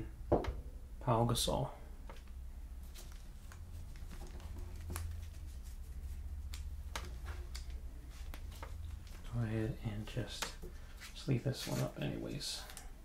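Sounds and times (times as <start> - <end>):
cards rustling and clicking: 2.1 - 9.4.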